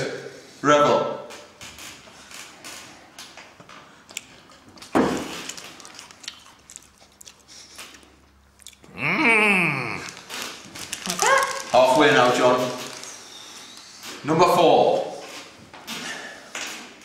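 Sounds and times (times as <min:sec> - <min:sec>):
person chewing sweet: 0:04.1 - 0:04.6, 0:05.4 - 0:11.8.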